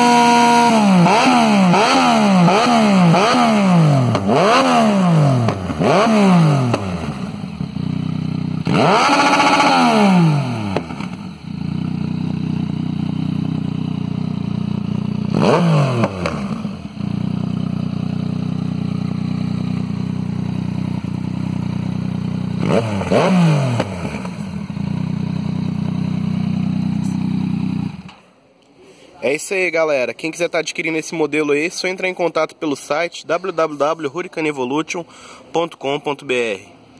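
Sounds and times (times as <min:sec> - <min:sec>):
motorcycle engine idling and revving: 0:00.0 - 0:28.4.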